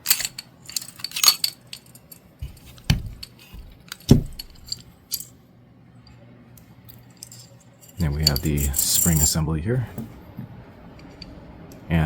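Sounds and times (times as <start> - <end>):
pistol metal clicks and clinks: 0.0 - 5.3
loud metal knocks: 2.8 - 4.7.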